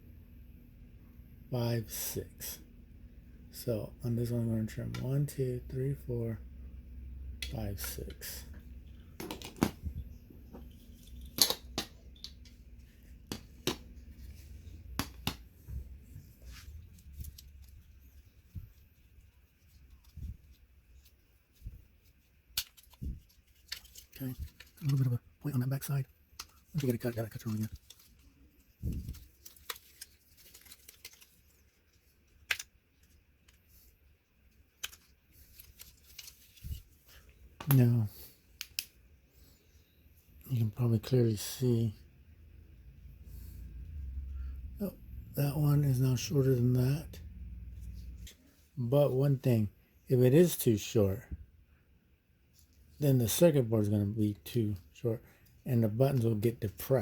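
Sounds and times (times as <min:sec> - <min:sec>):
plastic snapping: 0:32.4 - 0:32.7.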